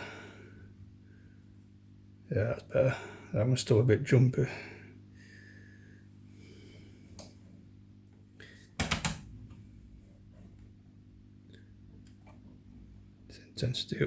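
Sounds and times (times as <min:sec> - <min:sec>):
steady low hum: 0:00.0 - 0:14.0
oscilloscope control clicks: 0:08.8 - 0:09.3.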